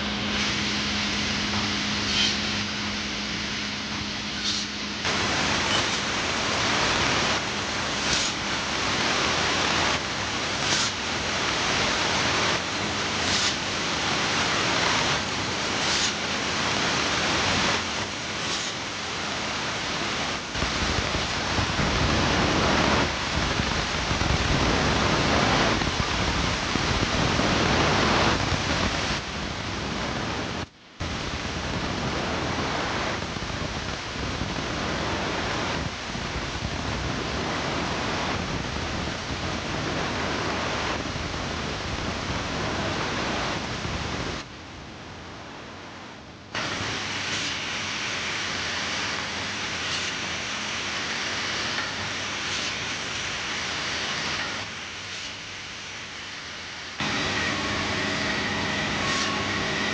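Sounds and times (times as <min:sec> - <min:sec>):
wood saw and drill machine: 0:57.0 - 0:59.9.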